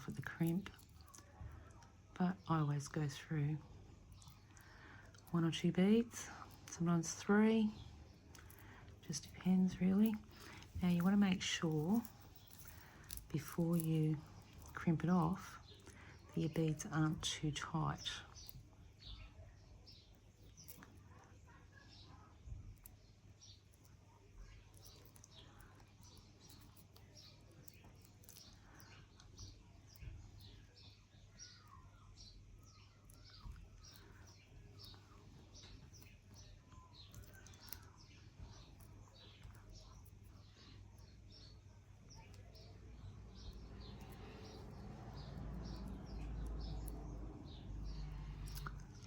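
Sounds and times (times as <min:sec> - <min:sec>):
low steady hum: 0:00.0 - 0:49.0
small bird chirping: 0:00.0 - 0:49.0
low rumble: 0:42.8 - 0:49.0.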